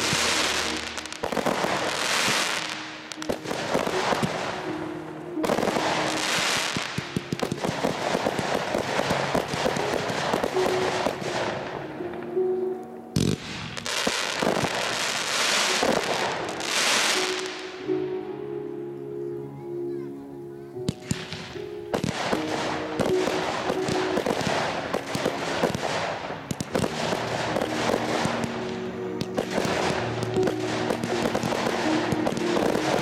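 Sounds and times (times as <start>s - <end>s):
fireworks crackling: 0.0s - 12.6s, 13.2s - 18.0s, 20.9s - 33.0s
faint music: 0.0s - 33.0s.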